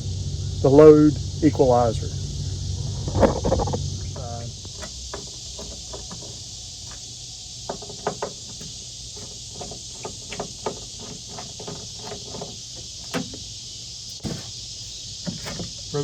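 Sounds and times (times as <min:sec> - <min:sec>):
hands clicking plastic parts: 0:03.5 - 0:13.4.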